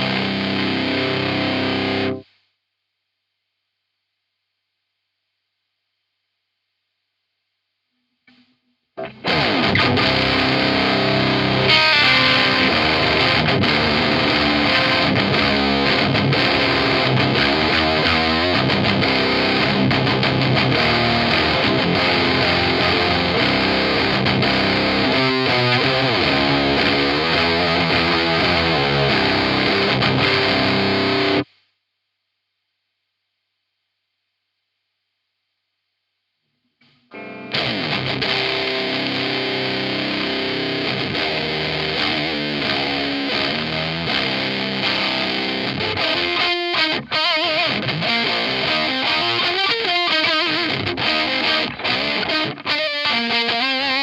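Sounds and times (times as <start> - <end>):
distorted electric guitar: 0.0 - 2.3, 8.3 - 31.5, 36.8 - 54.0.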